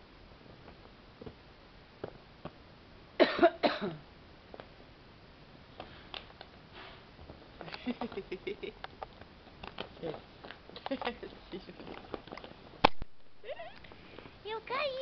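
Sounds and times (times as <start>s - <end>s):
loud coughs: 3.2s - 4.0s
dog gnawing a bone: 8.9s - 12.9s.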